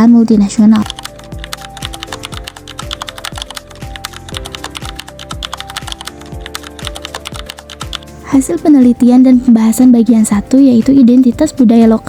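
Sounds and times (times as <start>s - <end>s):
music with kick-drum beat: 1.1s - 8.3s.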